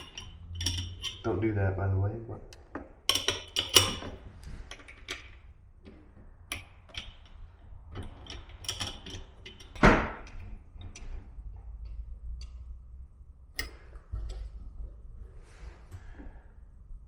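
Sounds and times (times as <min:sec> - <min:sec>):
metal parts and tools clicking: 0:00.0 - 0:01.3, 0:02.5 - 0:11.2, 0:13.5 - 0:14.5.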